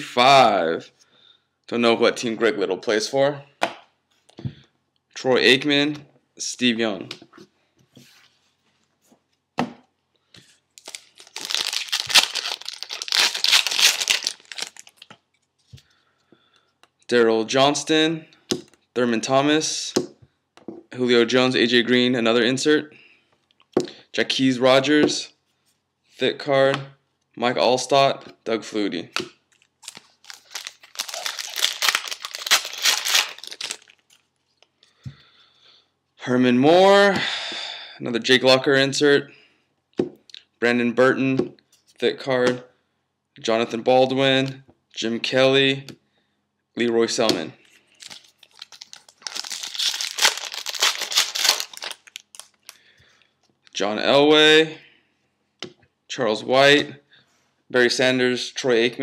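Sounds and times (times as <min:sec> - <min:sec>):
wrapper tearing and crinkling: 0:10.8 - 0:15.1, 0:29.5 - 0:34.3, 0:48.0 - 0:52.8.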